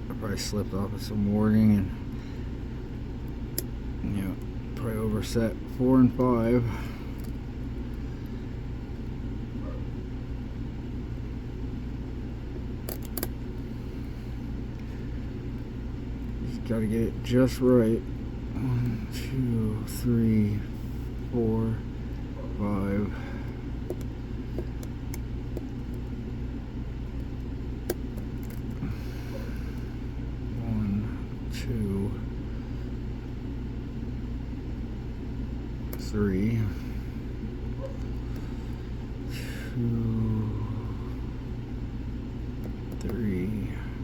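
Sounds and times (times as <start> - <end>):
low background rumble: 0.0 - 44.0
lock pick clicking on pins: 12.8 - 13.4, 27.9 - 28.8
picking tools clicking on padlock: 12.9 - 13.3.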